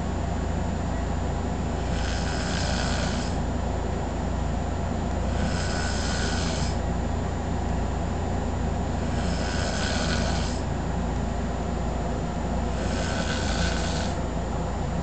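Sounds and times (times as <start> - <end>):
man snoring: 1.8 - 3.5, 5.2 - 6.8, 9.0 - 10.7, 12.6 - 14.2.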